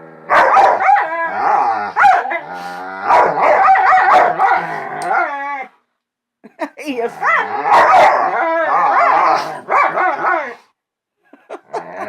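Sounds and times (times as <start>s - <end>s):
dogs howling and whining: 0.0s - 5.8s, 7.2s - 10.6s.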